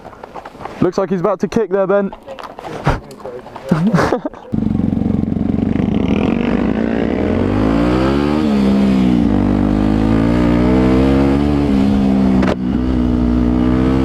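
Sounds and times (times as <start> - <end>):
motorcycle engine accelerating: 4.5 - 14.0.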